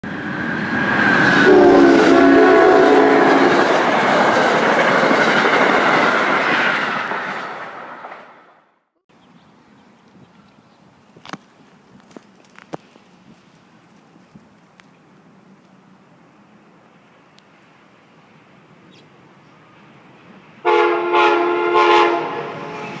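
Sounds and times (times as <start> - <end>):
train rumble and clatter: 0.1 - 8.6
train horn blast: 1.4 - 3.8, 20.6 - 23.0.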